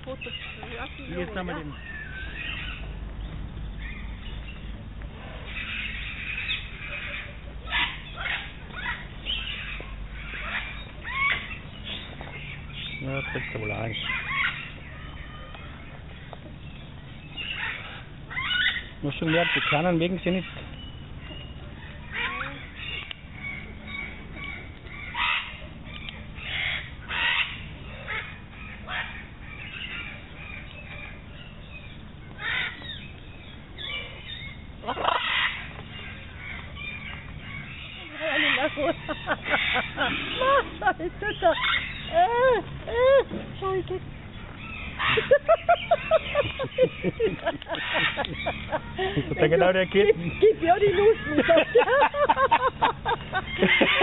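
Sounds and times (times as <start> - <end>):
birds chirping and squawking: 0.0 - 54.0
low steady hum: 0.0 - 54.0
steady low rumble: 20.5 - 54.0.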